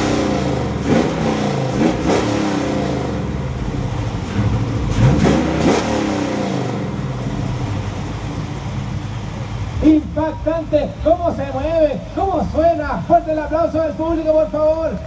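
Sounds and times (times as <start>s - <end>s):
engine revving hard: 0.0s - 11.8s.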